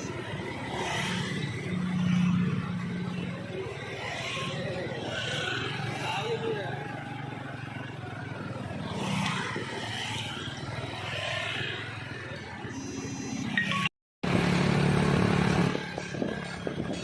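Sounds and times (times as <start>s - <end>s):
vehicle engine running: 14.2s - 17.0s.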